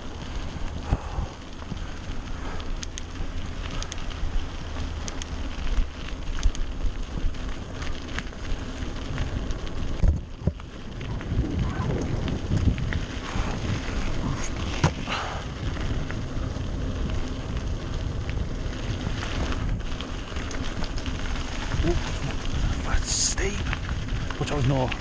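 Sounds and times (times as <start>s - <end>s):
bike clicks and rattles: 0.0s - 25.0s
tyres crackling over dirt and stones: 0.0s - 25.0s
wind buffeting microphone: 0.0s - 25.0s.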